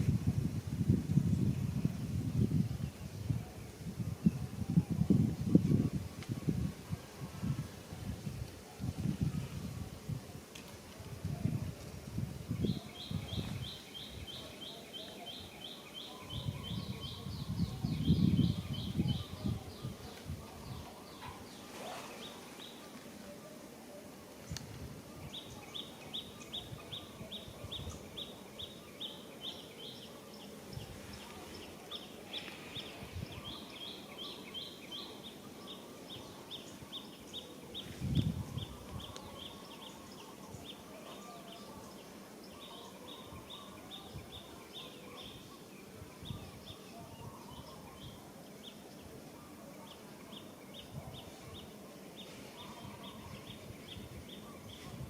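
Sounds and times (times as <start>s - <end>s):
outdoor background noise: 0.0s - 55.0s.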